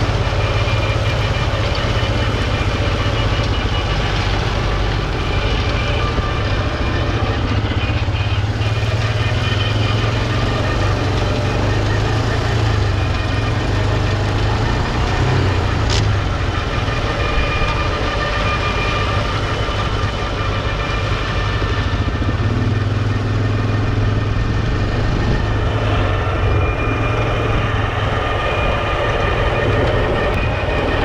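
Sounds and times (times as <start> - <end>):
quad bike engine droning: 0.0 - 31.0
tractor engine with mower: 0.0 - 31.0.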